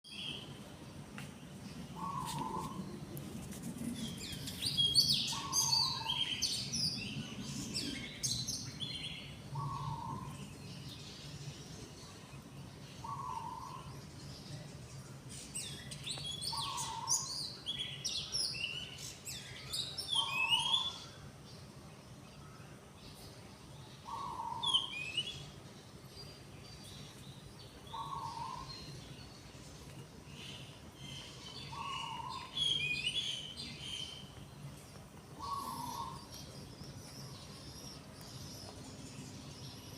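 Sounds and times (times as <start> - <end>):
birds chirping and trilling: 0.0 - 39.9
bird repeating low call: 35.4 - 36.3.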